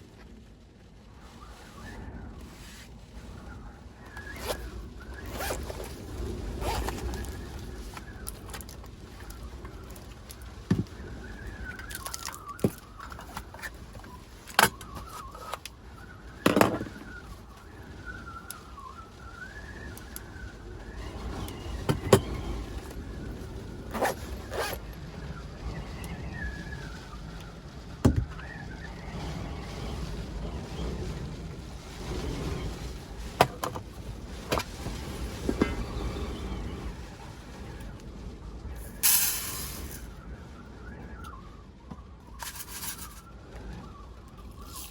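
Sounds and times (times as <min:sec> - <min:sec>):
storm wind buffeting a van: 0:00.0 - 0:44.9
faint wavering whistle: 0:01.3 - 0:29.7, 0:38.8 - 0:44.9.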